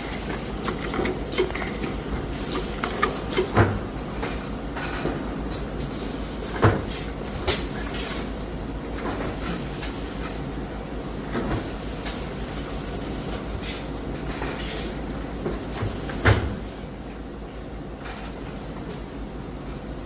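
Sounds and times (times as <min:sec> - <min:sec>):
machine clacks and knocks: 0:00.3 - 0:06.9.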